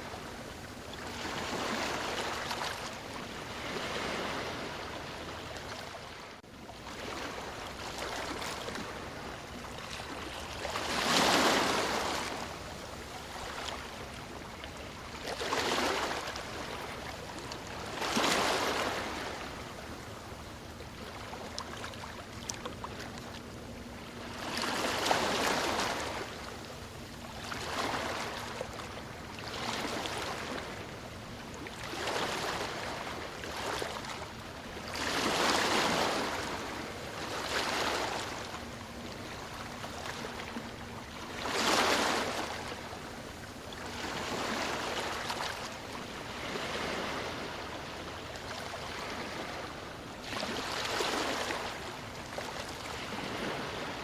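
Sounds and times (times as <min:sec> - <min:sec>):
ocean waves breaking: 0:00.0 - 0:54.0.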